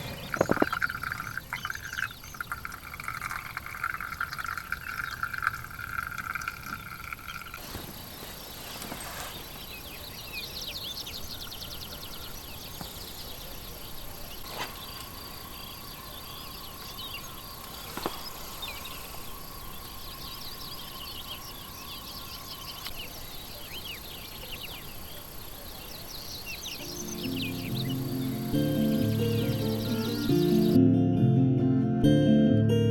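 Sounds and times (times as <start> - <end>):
small creatures chirping: 26.8 - 30.8.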